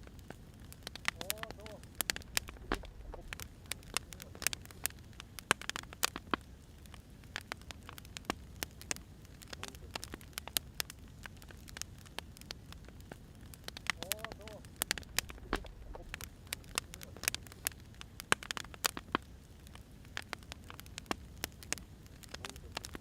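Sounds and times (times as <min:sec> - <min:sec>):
firewood crackling: 0:00.0 - 0:23.0
low rumble of fire: 0:00.0 - 0:23.0
sharp pops: 0:00.8 - 0:06.5, 0:13.0 - 0:19.3.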